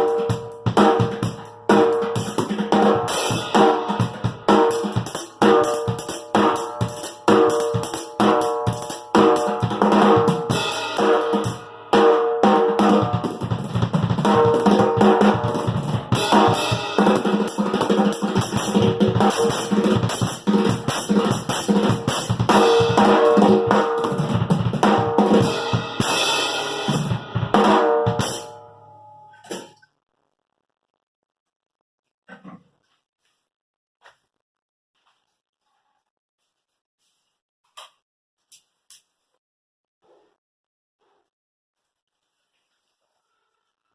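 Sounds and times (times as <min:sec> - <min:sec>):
drum kit playing: 0:00.0 - 0:28.8.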